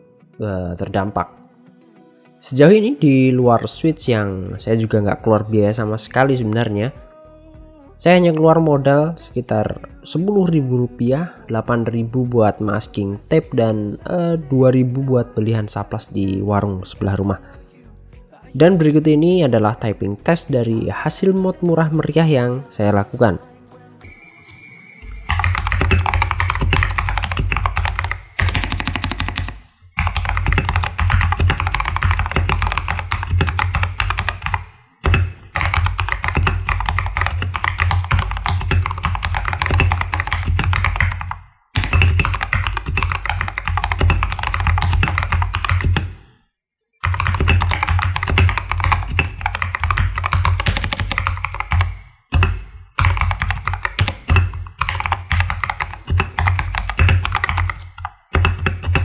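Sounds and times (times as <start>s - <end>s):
mechanical keyboard typing: 25.1s - 46.2s, 47.0s - 59.0s.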